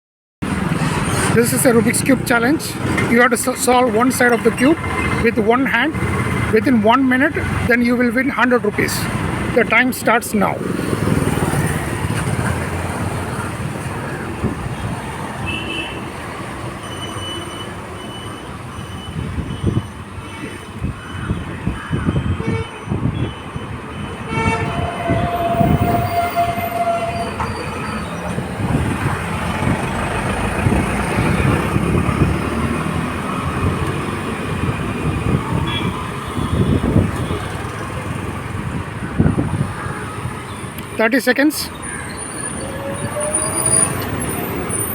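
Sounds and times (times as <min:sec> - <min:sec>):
vehicle rumble: 0:00.4 - 0:41.0
held horn-like tone: 0:24.1 - 0:28.3.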